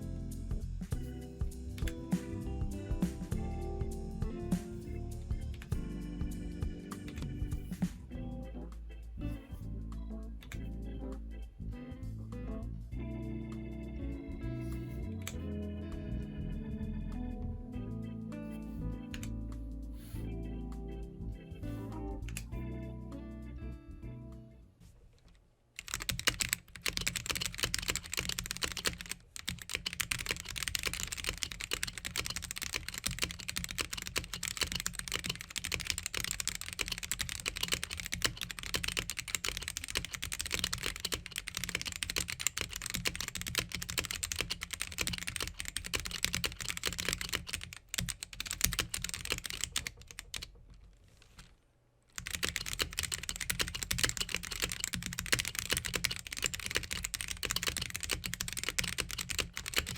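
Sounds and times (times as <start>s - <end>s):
fast mechanical keyboard typing: 25.8s - 50.6s, 52.2s - 59.9s.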